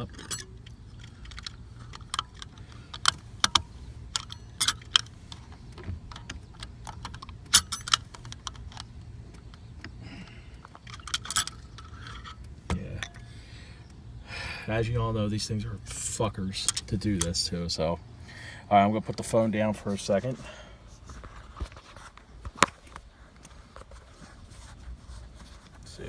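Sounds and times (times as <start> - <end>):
sharp clicks of plastic parts: 0.0 - 14.0, 16.6 - 17.4.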